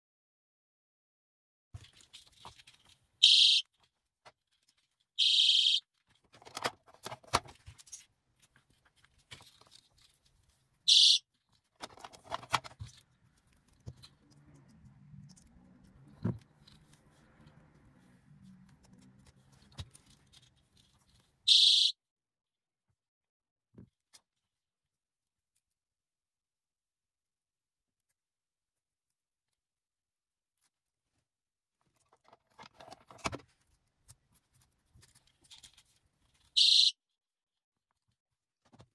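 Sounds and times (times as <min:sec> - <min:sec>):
clicking and rustling of handling: 0:01.8 - 0:05.2, 0:05.9 - 0:21.4, 0:31.8 - 0:36.6
high-pitched alarm bursts: 0:03.2 - 0:03.6, 0:05.2 - 0:05.8, 0:21.5 - 0:21.9.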